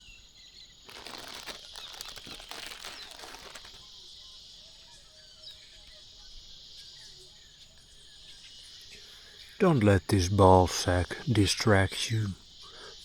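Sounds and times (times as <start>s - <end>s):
high-pitched insect chorus: 0.1s - 13.0s
loud rustling crackling noise: 0.8s - 3.9s.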